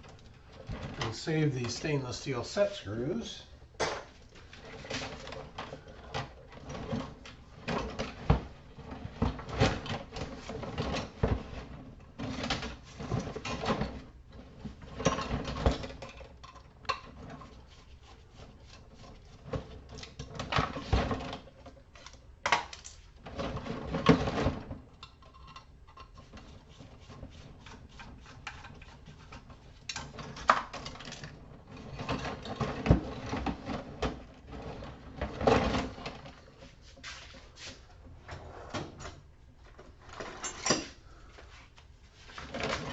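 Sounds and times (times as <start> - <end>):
metal parts and tools clattering: 40.1 - 41.0.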